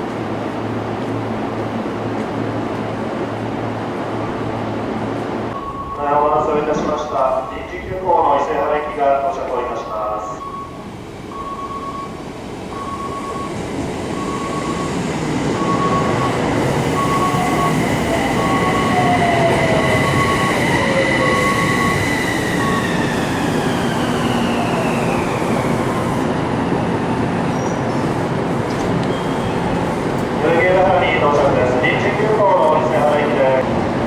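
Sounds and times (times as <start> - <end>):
train wheels rumbling: 0.0 - 34.0
train braking: 5.5 - 33.6
short electronic beep: 5.6 - 6.2
train traction motors whining: 5.6 - 33.9.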